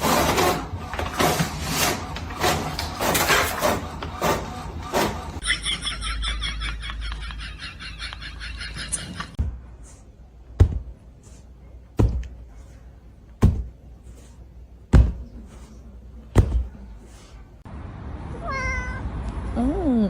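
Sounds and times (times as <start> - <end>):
heavy thumps: 10.5 - 11.2, 11.9 - 12.6, 13.3 - 15.7, 16.3 - 16.9.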